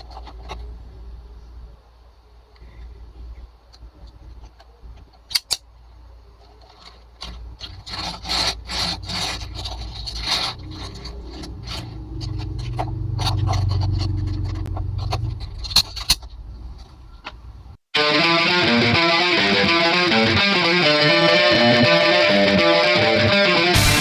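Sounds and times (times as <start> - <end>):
packaging rubbing and scraping: 6.5 - 16.3.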